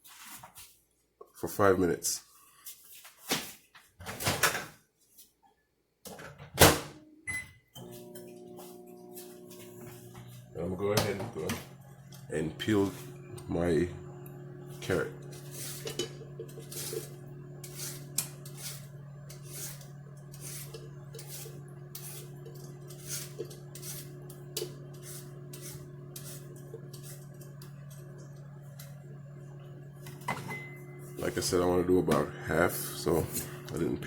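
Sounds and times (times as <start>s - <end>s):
peeler scraping carrot: 15.3s - 27.6s.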